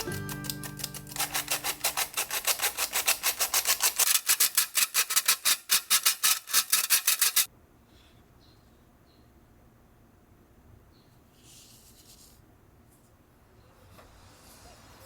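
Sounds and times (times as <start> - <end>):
rubbing or scrubbing strokes: 0.0 - 7.5.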